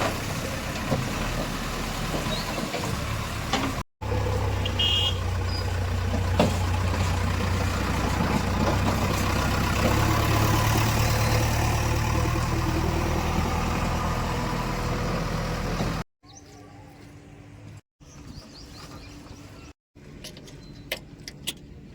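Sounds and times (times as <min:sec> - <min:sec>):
diesel engine running: 0:00.0 - 0:16.1.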